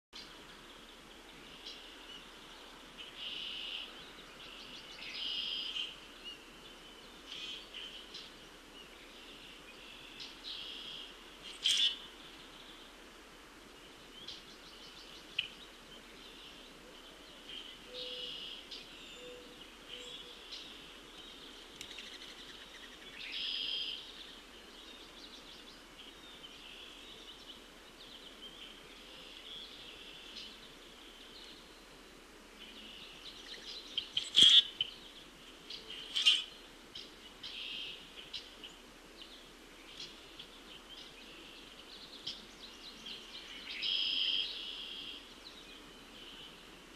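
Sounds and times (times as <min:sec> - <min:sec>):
birds singing and chirping: 0:14.1 - 0:31.8, 0:32.6 - 0:46.6
sharp loud bird calls: 0:34.0 - 0:34.9, 0:36.0 - 0:36.5.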